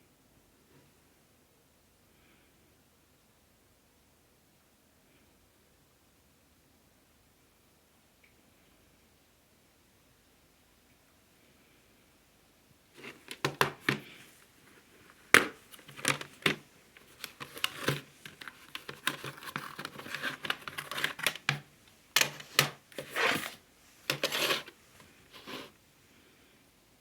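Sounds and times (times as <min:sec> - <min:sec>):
handling clicks and taps: 0:13.0 - 0:14.2, 0:15.3 - 0:24.7
packaging tearing and crinkling: 0:15.4 - 0:21.6, 0:22.2 - 0:24.8.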